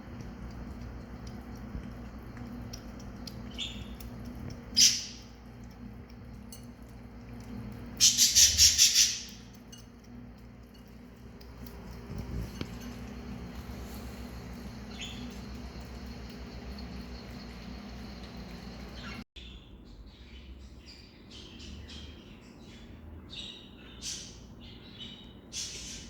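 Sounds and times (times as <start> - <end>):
low steady hum: 0.0 - 23.9.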